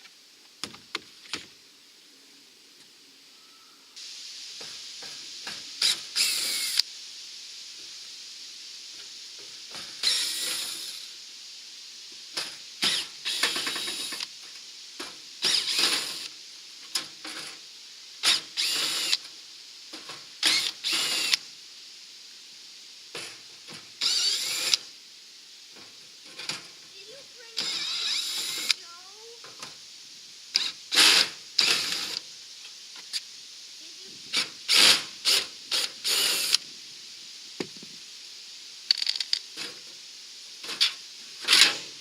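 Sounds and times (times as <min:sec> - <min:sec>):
power drill backing out screws: 0:12.8 - 0:14.2, 0:15.4 - 0:16.3, 0:27.6 - 0:28.8, 0:30.6 - 0:32.2, 0:40.7 - 0:41.8.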